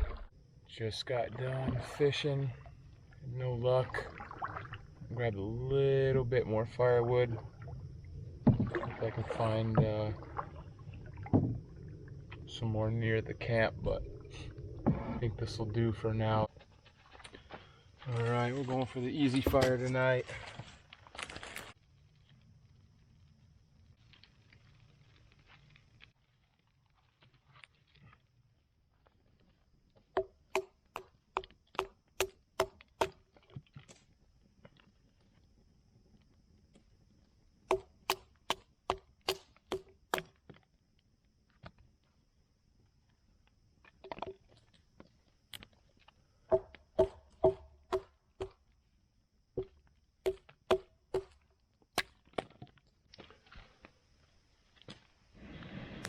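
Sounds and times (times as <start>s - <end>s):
firewood being chopped: 30.2s - 33.2s, 37.7s - 40.4s, 46.5s - 48.6s, 49.6s - 51.4s
sharp wooden knocks: 30.2s - 33.2s, 37.7s - 40.3s, 46.5s - 48.6s, 49.6s - 51.4s.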